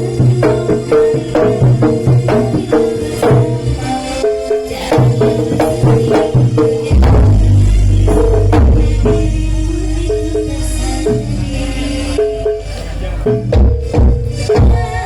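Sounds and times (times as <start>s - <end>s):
drum and percussion strikes: 0.0s - 15.0s
stepping pitched melody: 0.0s - 15.0s
bass line: 5.0s - 15.0s
heavy bass beat: 5.0s - 15.0s.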